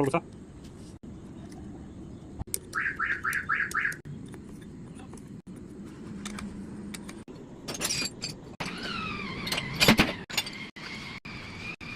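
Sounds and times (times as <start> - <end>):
metal parts clinking: 7.0 - 8.6.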